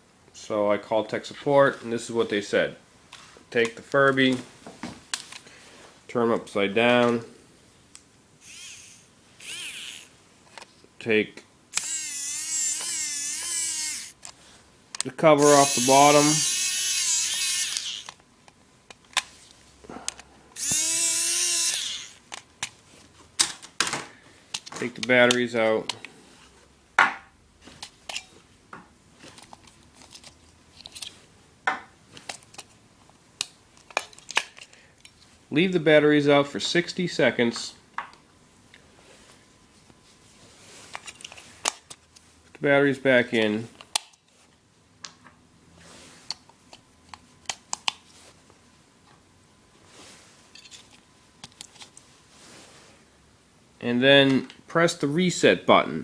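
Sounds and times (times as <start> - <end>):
soft handling noise: 3.1 - 7.3, 27.6 - 31.4.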